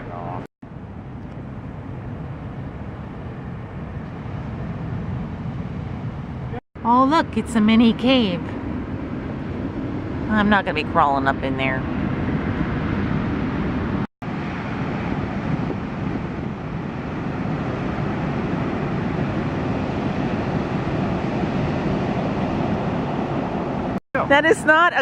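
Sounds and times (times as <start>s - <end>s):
wind buffeting microphone: 0.0s - 25.0s
ocean surf: 8.0s - 24.5s.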